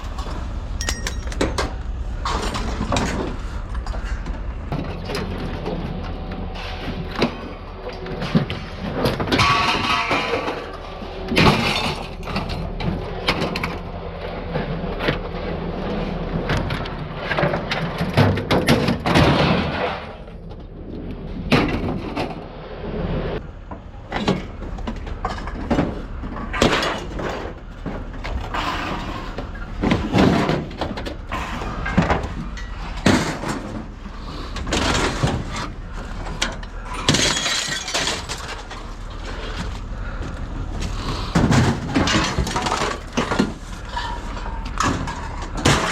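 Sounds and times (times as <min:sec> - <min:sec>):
scrap crashing onto a pile: 0:09.1 - 0:12.6, 0:24.1 - 0:40.2, 0:40.8 - 0:45.9
glass breaking: 0:37.0 - 0:38.8.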